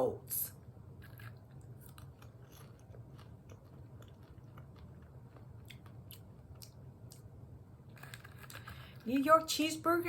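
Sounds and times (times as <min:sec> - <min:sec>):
person chewing popcorn: 0:00.8 - 0:09.2.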